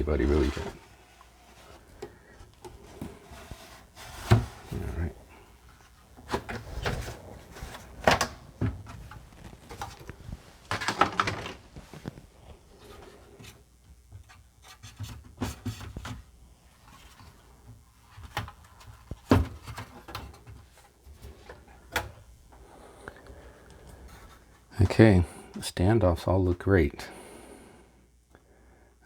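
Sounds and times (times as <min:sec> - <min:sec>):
hands handling computer case: 0:00.2 - 0:17.4.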